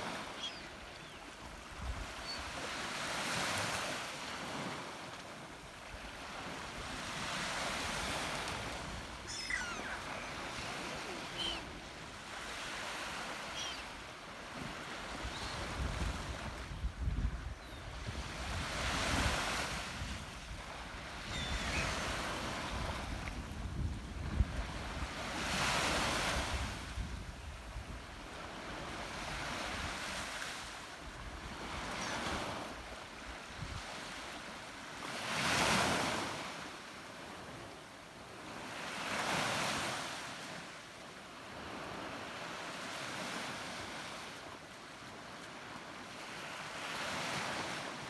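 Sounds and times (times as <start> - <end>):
sea waves breaking on shore: 0.0 - 27.0, 28.2 - 37.7, 41.4 - 48.0
wind rumble on microphone: 15.3 - 28.3.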